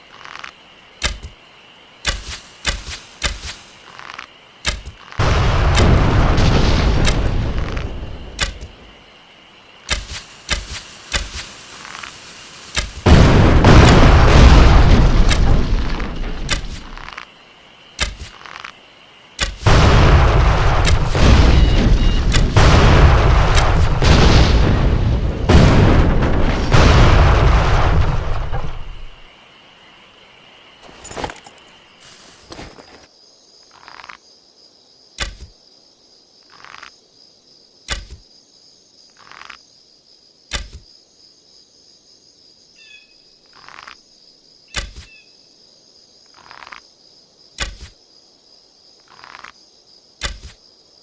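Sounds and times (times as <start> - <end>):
booming blasts with deep rumble: 5.2 - 8.9, 12.9 - 17.1, 19.5 - 29.3
sharp clicks and snaps: 8.4 - 8.7.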